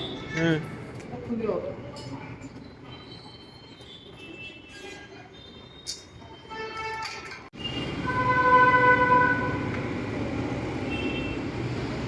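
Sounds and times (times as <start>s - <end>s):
vehicle horn: 6.5s - 9.7s
road traffic rumbling: 7.0s - 12.0s.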